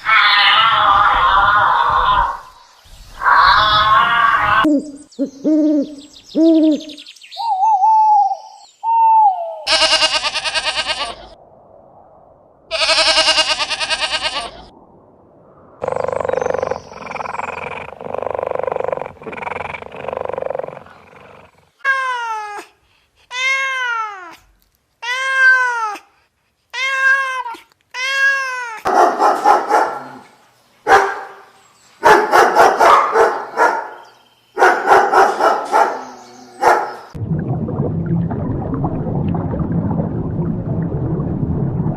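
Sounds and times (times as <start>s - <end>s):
long noisy animal cries: 0.0s - 2.6s, 9.7s - 11.2s, 12.7s - 14.6s
dog barking: 28.8s - 30.2s, 30.8s - 34.0s, 34.6s - 37.1s.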